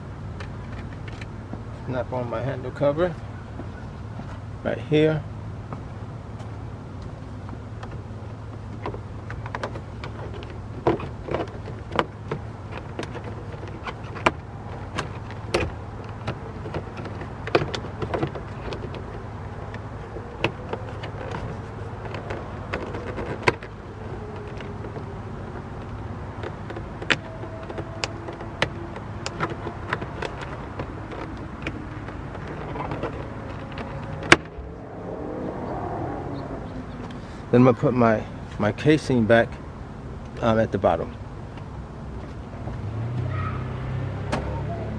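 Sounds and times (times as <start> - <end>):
faint whine sliding in pitch: 32.8 - 37.2.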